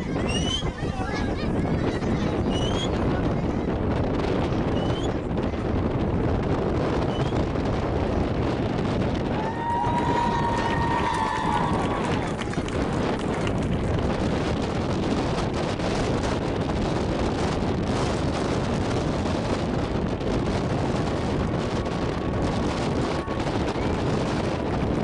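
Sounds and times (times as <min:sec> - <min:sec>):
wind buffeting microphone: 0:00.0 - 0:25.0.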